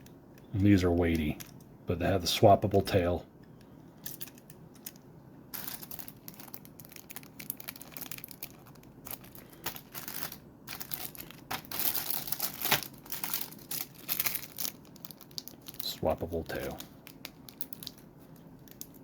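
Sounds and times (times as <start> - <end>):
plastic packaging crinkling: 4.0 - 19.0.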